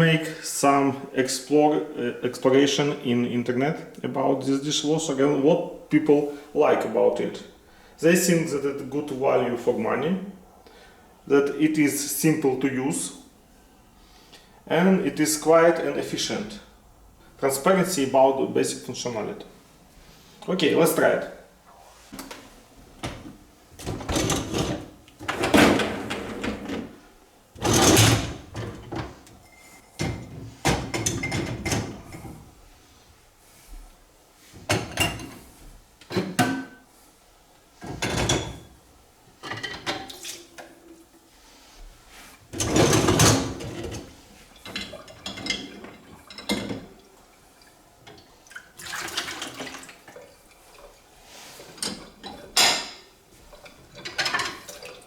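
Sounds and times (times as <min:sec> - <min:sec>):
plates and cups clattering: 0:27.6 - 0:32.4, 0:39.4 - 0:40.3, 0:51.7 - 0:55.0.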